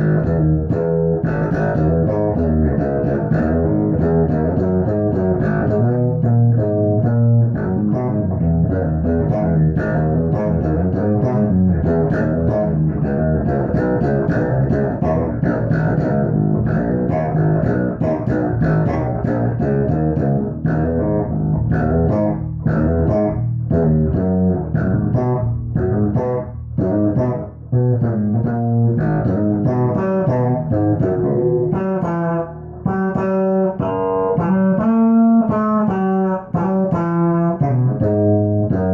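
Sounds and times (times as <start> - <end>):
electric guitar plucked notes: 0.0 - 38.9.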